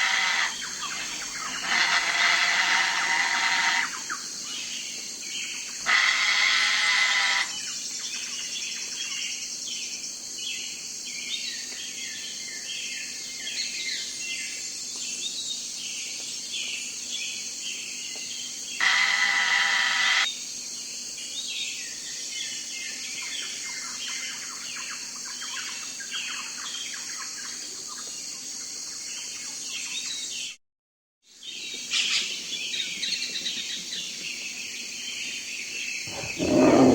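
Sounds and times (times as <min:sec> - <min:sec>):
birds chirping and twittering: 0:32.0 - 0:36.9
loud harsh bird call: 0:36.1 - 0:36.9.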